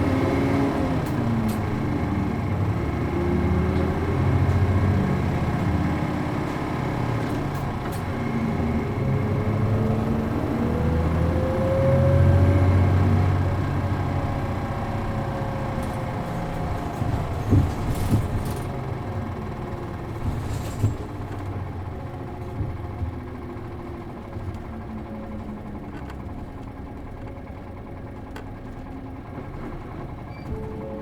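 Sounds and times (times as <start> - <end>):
bus diesel engine drone: 0.0 - 31.0
bus body knocks and rattles: 13.6 - 27.2, 28.2 - 31.0.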